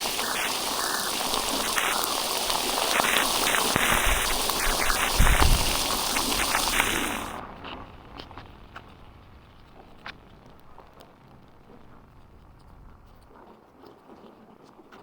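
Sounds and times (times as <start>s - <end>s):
heavy rain pouring: 0.0s - 7.4s.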